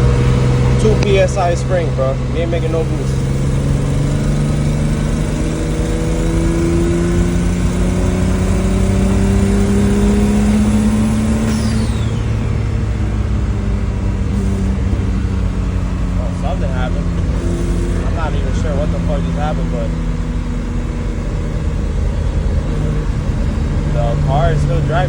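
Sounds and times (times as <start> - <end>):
turbocharged car engine: 0.0 - 25.0
turbo whistle: 9.8 - 12.7.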